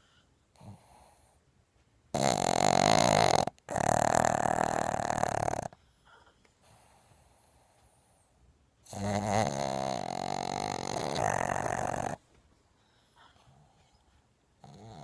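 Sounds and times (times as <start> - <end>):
dog snoring loudly: 2.1 - 5.8, 8.9 - 12.2, 14.6 - 15.0.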